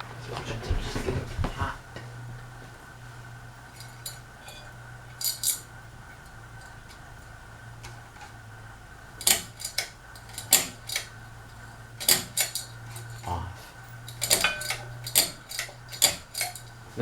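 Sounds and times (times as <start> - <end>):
ceiling fan motor hum: 0.0 - 17.0
pull chain jingling and clicks: 3.6 - 8.5, 9.1 - 16.9.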